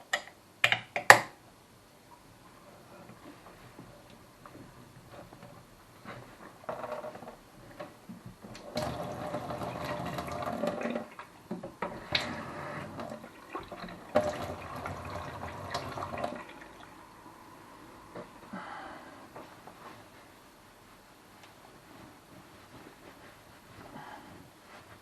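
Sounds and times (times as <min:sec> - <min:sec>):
water running from tap: 0:08.6 - 0:17.0.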